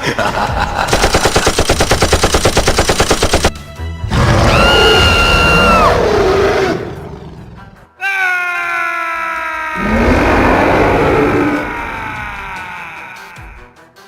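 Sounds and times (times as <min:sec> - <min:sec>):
machine-gun fire: 0:00.3 - 0:03.6.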